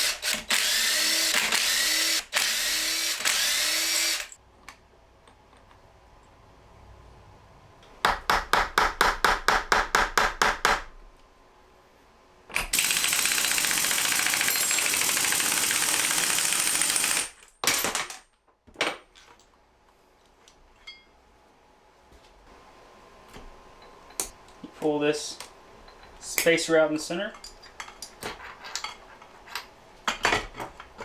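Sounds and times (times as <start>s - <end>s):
power tool hammering: 0.0s - 4.4s, 8.0s - 10.9s, 12.6s - 17.9s.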